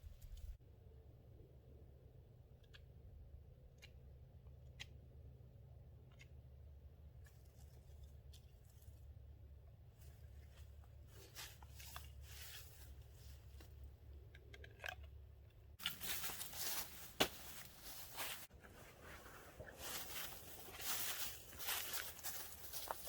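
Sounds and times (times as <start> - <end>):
low steady hum: 0.0 - 23.0
rustling and crunching: 10.0 - 23.0.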